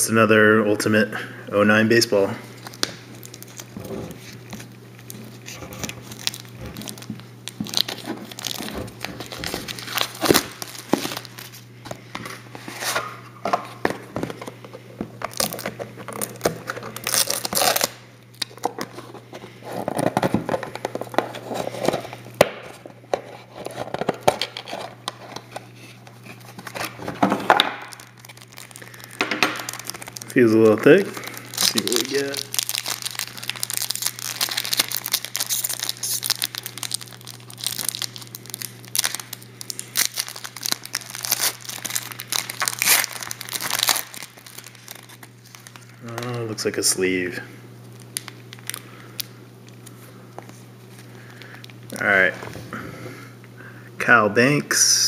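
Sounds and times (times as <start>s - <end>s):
plastic wrapping crinkling and tearing: 2.5s - 46.6s, 47.8s - 52.4s.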